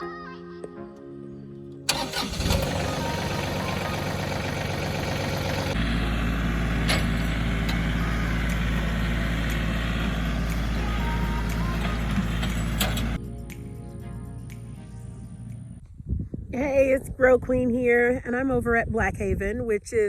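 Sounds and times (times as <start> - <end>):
tractor diesel engine running: 1.9 - 13.2
deep low rumble: 2.8 - 13.2.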